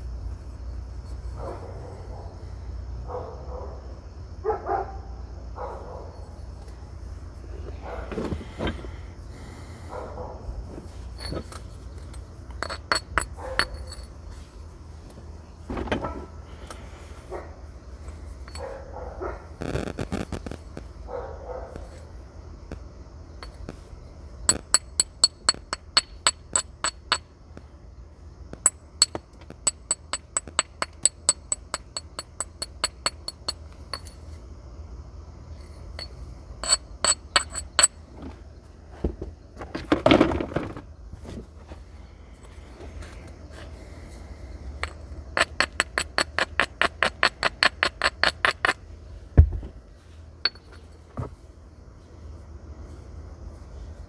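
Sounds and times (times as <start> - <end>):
stone tool striking flint: 12.6 - 14.1, 24.5 - 27.7, 28.6 - 34.2, 36.0 - 38.0, 44.8 - 48.8.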